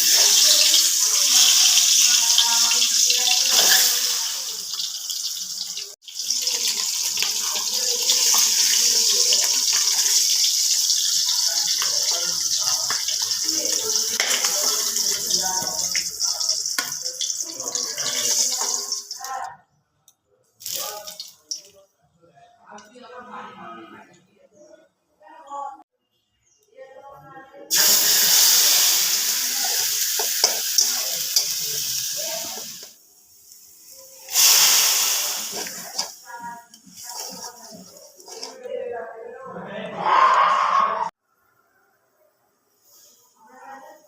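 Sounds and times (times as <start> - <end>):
tap water running into sink: 0.0 - 19.2.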